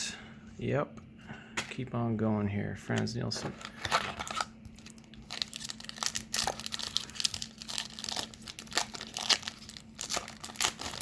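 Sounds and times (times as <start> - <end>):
wrapper crinkling: 3.9 - 11.0.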